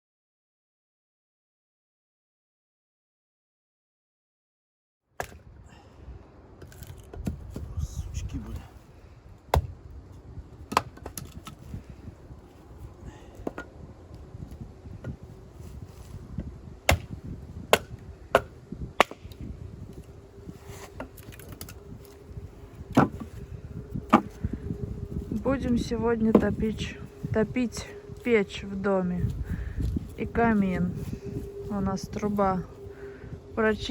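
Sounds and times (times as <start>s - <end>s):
axe chopping wood: 9.5s - 9.7s, 10.7s - 11.3s, 16.9s - 19.2s, 24.1s - 24.3s.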